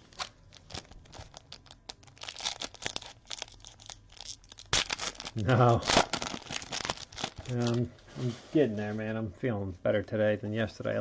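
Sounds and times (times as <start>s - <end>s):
wrapper crinkling and tearing: 0.0s - 7.9s.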